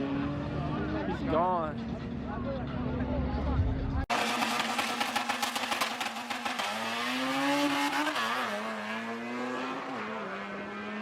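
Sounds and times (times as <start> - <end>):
car engine accelerating hard: 4.1 - 11.0.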